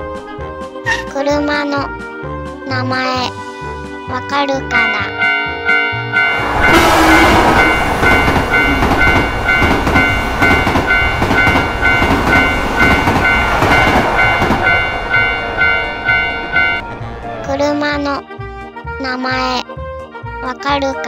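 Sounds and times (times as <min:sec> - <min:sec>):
railroad crossing bell dinging: 0:04.6 - 0:16.9
train rushing past: 0:04.7 - 0:17.8.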